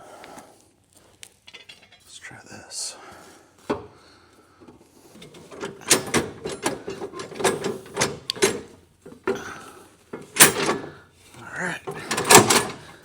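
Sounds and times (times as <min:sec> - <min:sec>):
metal parts clanking: 0:01.4 - 0:02.1, 0:05.2 - 0:11.0, 0:11.7 - 0:13.0.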